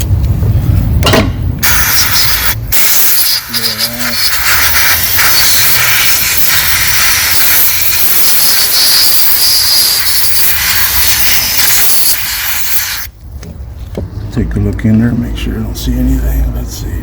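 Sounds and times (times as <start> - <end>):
loud steady spray hiss: 1.6 - 13.1.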